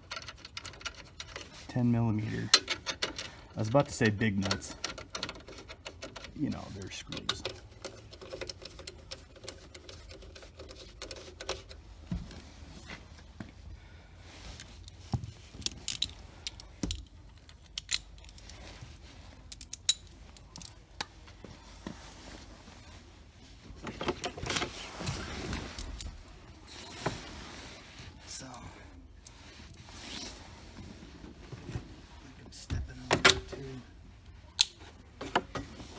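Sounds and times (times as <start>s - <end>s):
rustling and scraping: 0.0s - 35.9s
metallic clinks of tools and screws: 2.4s - 11.6s.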